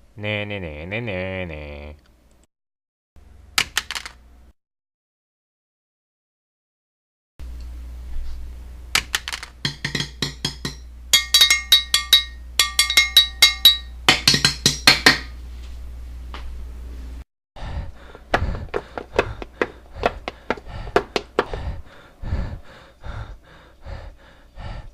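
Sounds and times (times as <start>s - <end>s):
low steady hum: 7.4s - 24.9s
sharp taps and clicks: 18.3s - 21.6s.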